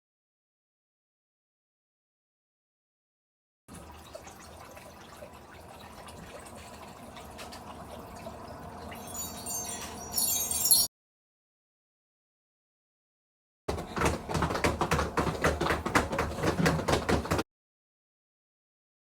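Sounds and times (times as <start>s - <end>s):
chimes jingling: 8.9s - 10.9s.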